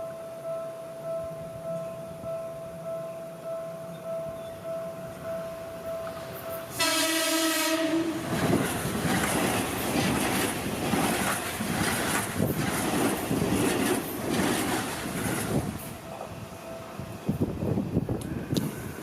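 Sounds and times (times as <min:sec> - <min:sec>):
level crossing warning bell: 0:00.0 - 0:06.9
train wheel and rail noise: 0:00.0 - 0:19.0
train horn: 0:06.0 - 0:08.3.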